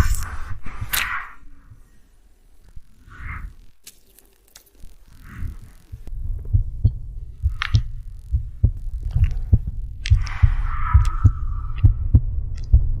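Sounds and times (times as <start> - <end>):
stomach growling: 4.8 - 12.7.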